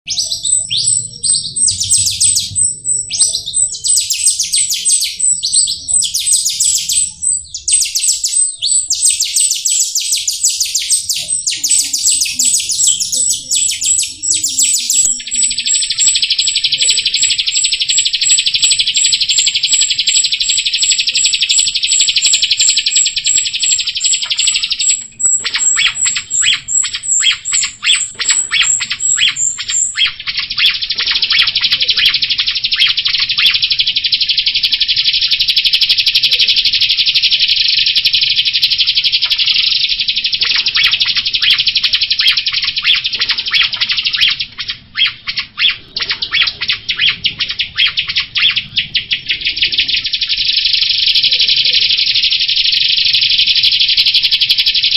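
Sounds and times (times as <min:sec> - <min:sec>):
high-pitched ticking: 0:00.1 - 0:30.2
starling singing trills: 0:00.1 - 0:54.9.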